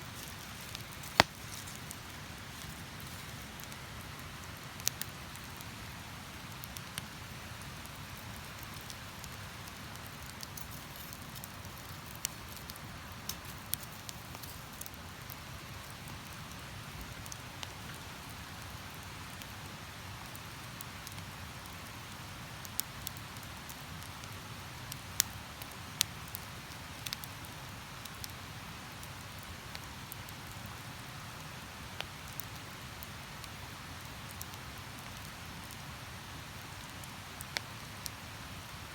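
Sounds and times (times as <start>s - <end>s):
campfire crackling: 0.0s - 38.9s
sharp pops: 0.2s - 1.9s.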